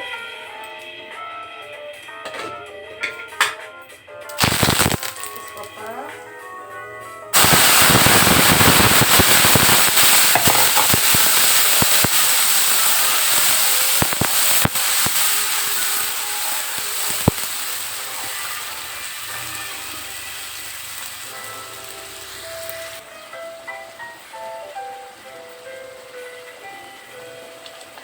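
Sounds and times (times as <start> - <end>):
paste sizzling in hot oil: 4.3 - 5.7, 7.4 - 23.2.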